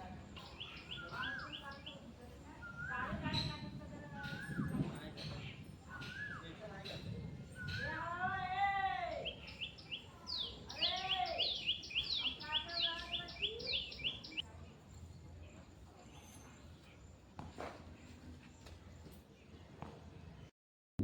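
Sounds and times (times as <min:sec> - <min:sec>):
birds chirping: 0:00.0 - 0:14.5
drawn-out rising and falling bird calls: 0:00.4 - 0:03.1, 0:07.6 - 0:14.4.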